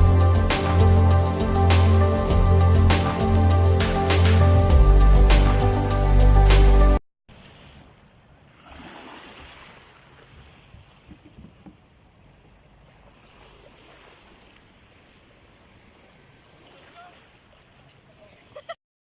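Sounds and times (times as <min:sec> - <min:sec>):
faint sea waves washing: 0:07.3 - 0:18.8.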